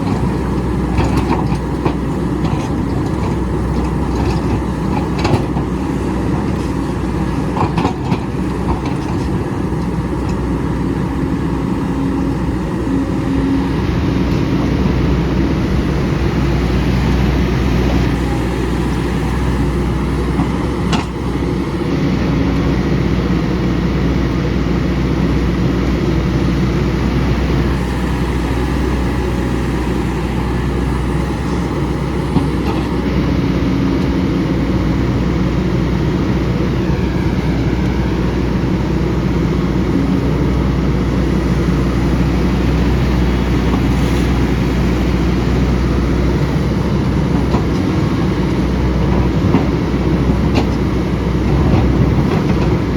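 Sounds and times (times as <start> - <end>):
excavator diesel engine running: 0.0 - 52.9.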